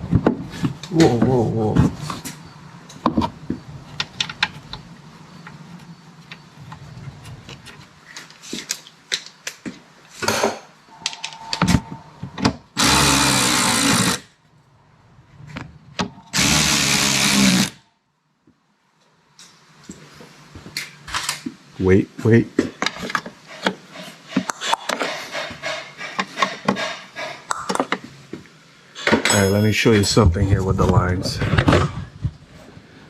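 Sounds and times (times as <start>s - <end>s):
cordless power tool running: 12.8s - 14.2s, 16.3s - 17.8s.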